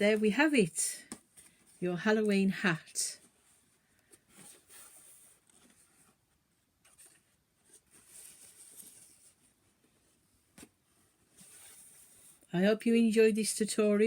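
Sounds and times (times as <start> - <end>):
faint rustling: 3.1 - 12.6.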